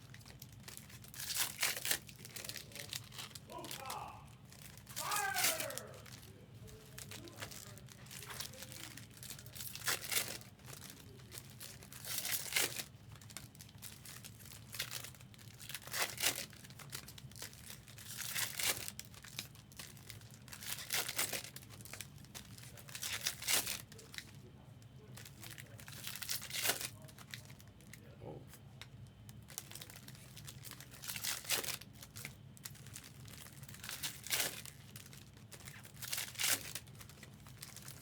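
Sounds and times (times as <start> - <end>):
wrapper crinkling: 0.0 - 24.4, 25.1 - 28.1, 28.8 - 38.0
card pack wrappers tearing: 0.1 - 24.2, 25.2 - 27.6, 29.4 - 38.0.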